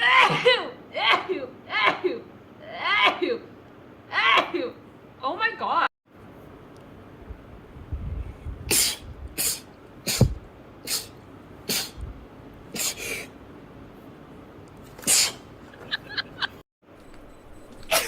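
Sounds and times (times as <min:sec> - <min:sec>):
girl sneezing: 0:00.0 - 0:03.4, 0:08.7 - 0:12.0, 0:12.8 - 0:13.3, 0:15.0 - 0:15.4.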